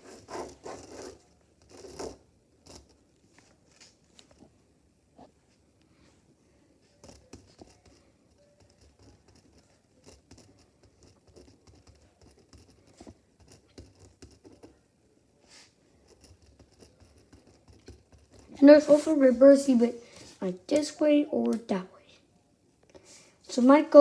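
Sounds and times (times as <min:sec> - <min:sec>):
pen scratching on paper: 0:00.0 - 0:03.0, 0:06.8 - 0:14.8, 0:15.5 - 0:20.3.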